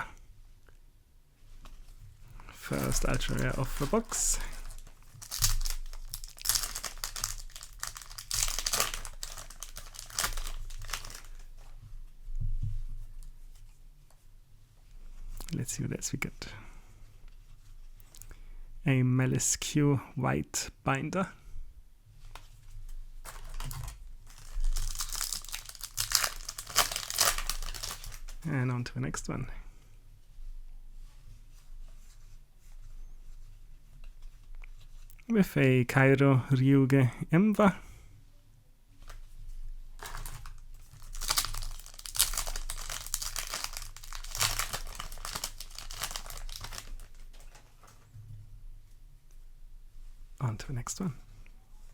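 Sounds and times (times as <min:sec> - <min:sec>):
foil wrapper crinkling: 0:02.5 - 0:11.6, 0:23.2 - 0:28.4, 0:40.0 - 0:48.0.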